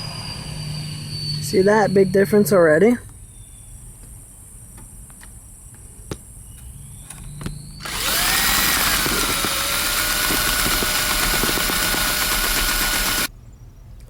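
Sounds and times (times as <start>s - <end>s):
electric drill spinning: 7.8s - 13.3s.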